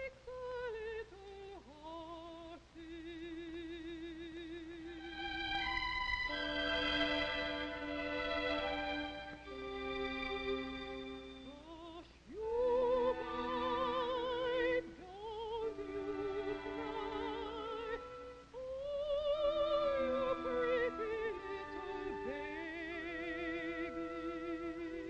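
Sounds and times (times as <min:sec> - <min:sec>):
classically trained voice singing: 0:00.0 - 0:05.4, 0:11.4 - 0:25.0
soft sustained accompanying chords: 0:03.5 - 0:11.6.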